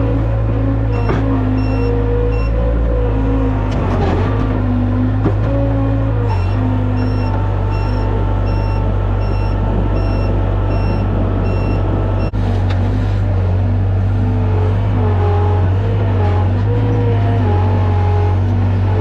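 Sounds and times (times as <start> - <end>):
skid loader engine running: 0.0 - 19.0
back-up alarm beeping: 6.4 - 12.3.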